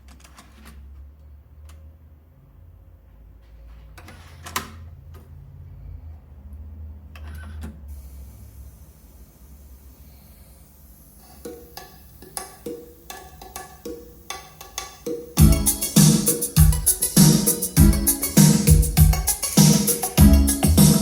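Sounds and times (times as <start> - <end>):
quiet rhythmic music: 11.5 - 21.0
loud music with heavy drum beat: 15.2 - 21.0.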